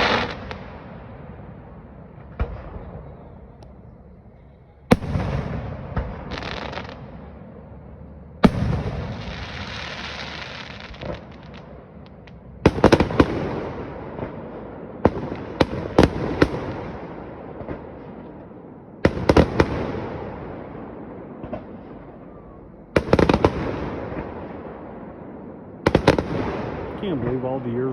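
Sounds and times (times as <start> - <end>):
firework hiss: 0.0 - 0.6, 9.0 - 11.6.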